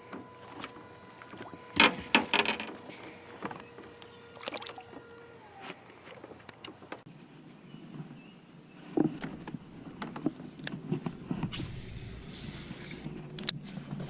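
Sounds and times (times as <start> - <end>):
knocks and clatter in a boat: 0.0 - 4.0, 6.1 - 7.1, 8.9 - 11.6.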